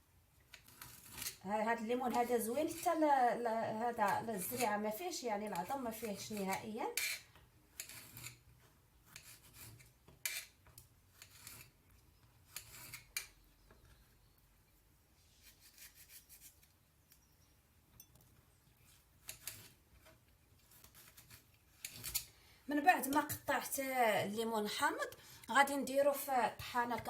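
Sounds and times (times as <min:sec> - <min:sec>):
knife cutting a lemon: 0:00.5 - 0:01.4, 0:05.6 - 0:08.4, 0:09.1 - 0:11.8, 0:12.4 - 0:13.4, 0:15.4 - 0:16.7, 0:18.9 - 0:22.3.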